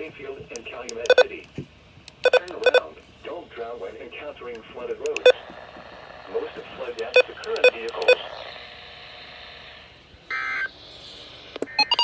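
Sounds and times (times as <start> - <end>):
short electronic beeps: 11.7 - 12.0.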